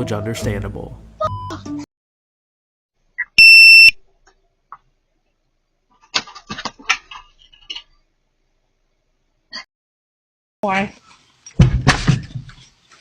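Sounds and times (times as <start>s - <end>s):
electronic censor bleep: 3.2s - 4.0s.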